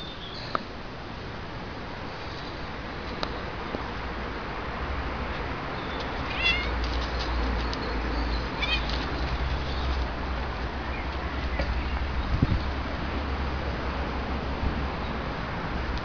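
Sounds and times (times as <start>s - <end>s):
cat meowing: 6.2s - 6.8s, 8.6s - 9.0s.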